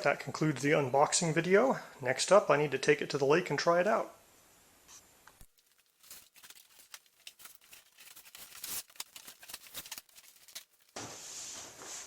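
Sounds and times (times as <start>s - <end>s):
handling clicks and rustles: 5.4s - 11.0s.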